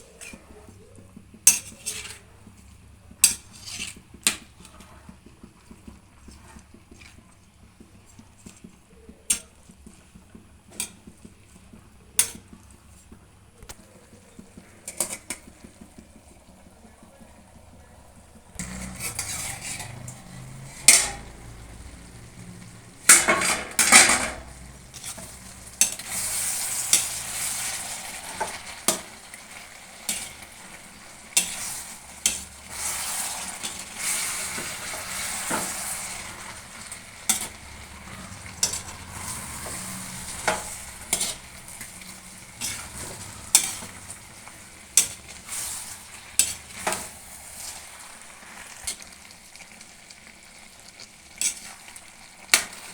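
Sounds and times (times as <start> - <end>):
metal spoon scraping a pan: 0.0 - 0.7, 1.4 - 4.9, 7.9 - 13.2, 14.1 - 16.5, 18.1 - 49.8, 50.8 - 52.9
curry sizzling in a pan: 0.0 - 52.9.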